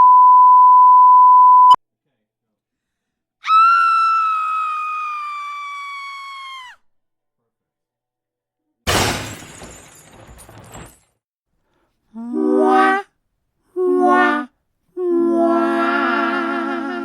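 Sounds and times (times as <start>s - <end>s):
shattering crash: 8.9s - 11.1s.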